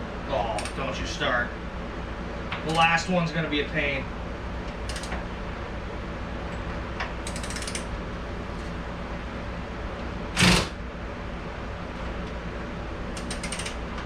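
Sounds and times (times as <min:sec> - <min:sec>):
shop fan hum: 0:00.0 - 0:14.0
cordless ratchet clicking: 0:04.9 - 0:05.2, 0:07.2 - 0:07.9, 0:13.2 - 0:13.8.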